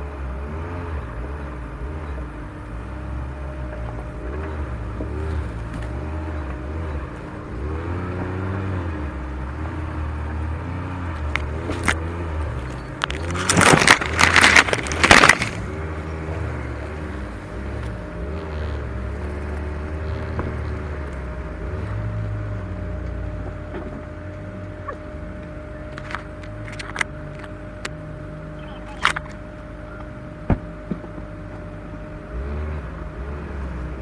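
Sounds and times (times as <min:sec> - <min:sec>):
off-road vehicle engine revving: 0:00.0 - 0:13.0, 0:15.6 - 0:26.5, 0:27.1 - 0:34.0
branches scraping vehicle body: 0:10.8 - 0:16.9, 0:24.9 - 0:27.9, 0:28.5 - 0:29.6.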